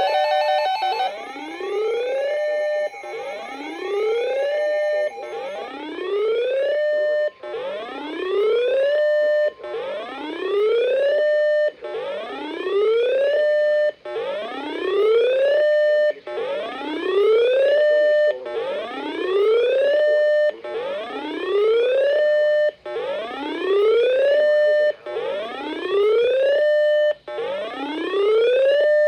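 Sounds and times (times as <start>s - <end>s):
electronic alarm sweeping tone: 0.0s - 9.5s.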